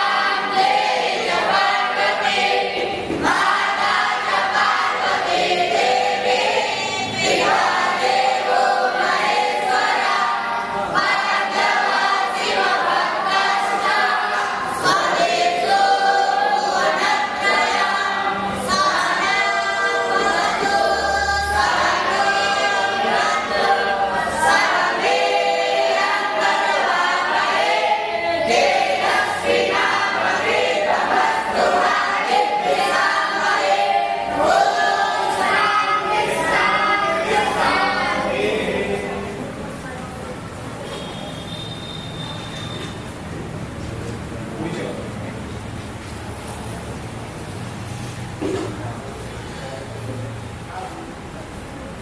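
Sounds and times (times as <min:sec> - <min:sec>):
group singing in unison: 0:00.0 - 0:39.7.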